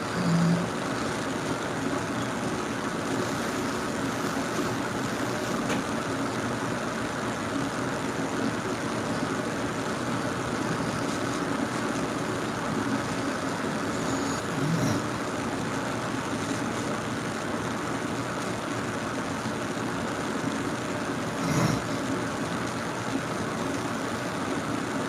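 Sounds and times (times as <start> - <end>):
person snoring: 0.0 - 0.9, 10.4 - 11.3, 13.1 - 15.3, 21.2 - 22.2.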